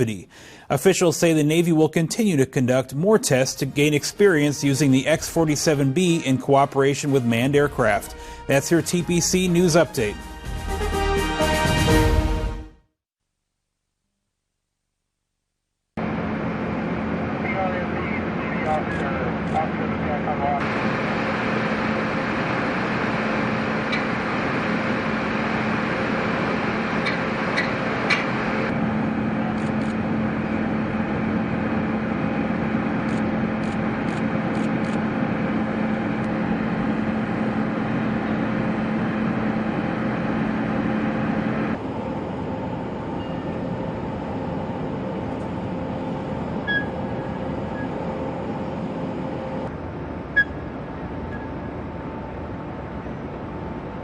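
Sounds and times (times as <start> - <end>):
mechanical drone: 16.0 - 54.0.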